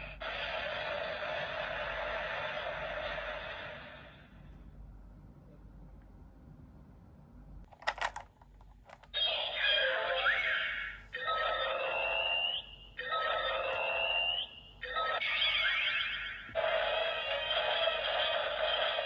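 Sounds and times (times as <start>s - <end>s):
toy electronic sound effects: 9.1s - 19.0s.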